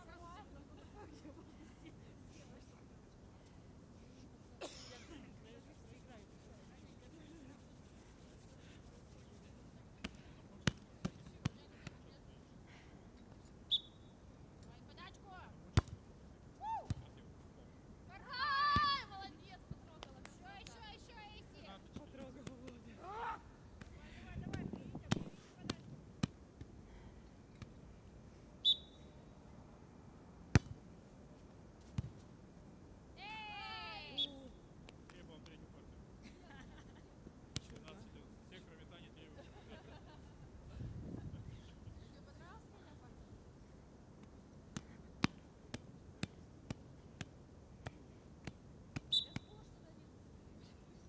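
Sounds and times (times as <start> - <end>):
sharp slaps: 24.5 - 26.4, 30.6 - 30.8, 37.5 - 37.9, 44.2 - 49.5.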